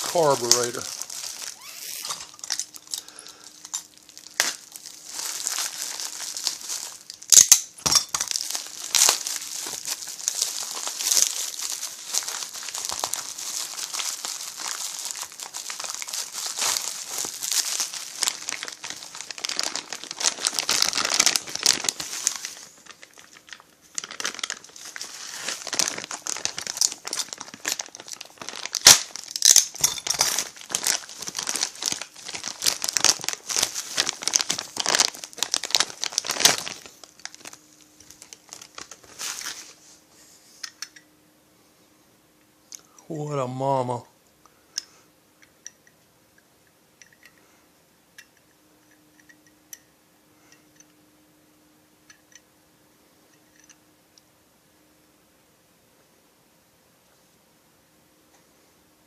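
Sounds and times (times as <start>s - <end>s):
plastic packaging crinkling: 0.0s - 40.0s.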